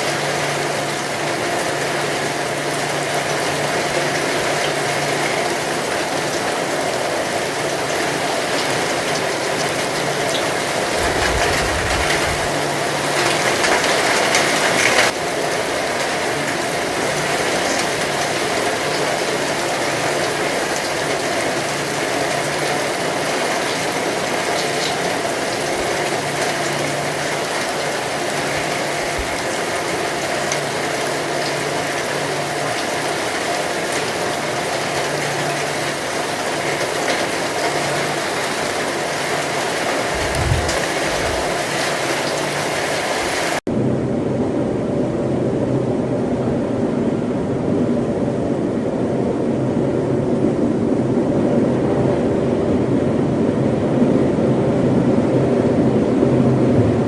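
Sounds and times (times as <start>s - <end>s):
heavy rain falling: 0.0s - 43.7s, 44.4s - 57.0s
low rumble: 10.8s - 13.0s, 40.1s - 41.5s, 54.0s - 57.0s.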